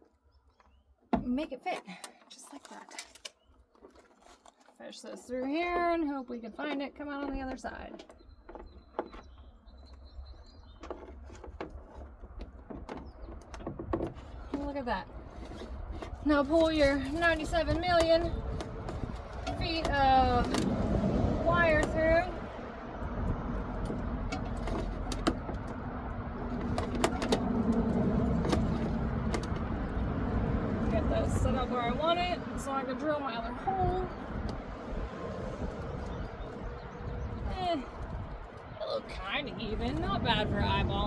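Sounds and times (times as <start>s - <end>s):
steady low rumble: 14.3s - 41.0s
wire clicking and scraping: 21.6s - 30.1s.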